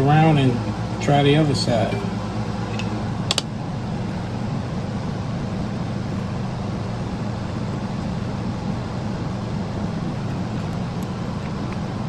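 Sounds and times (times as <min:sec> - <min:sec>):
air conditioner humming: 0:00.0 - 0:12.0
sharp click: 0:02.7 - 0:03.5.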